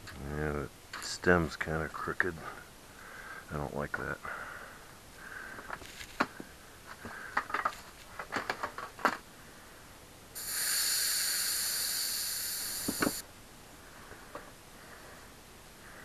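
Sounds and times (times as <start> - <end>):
air hissing through valve: 10.4 - 13.2
hands working bicycle tyre: 10.4 - 13.2.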